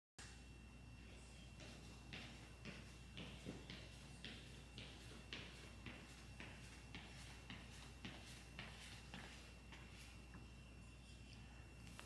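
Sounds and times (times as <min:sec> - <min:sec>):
faint high whine: 0:00.2 - 0:12.0.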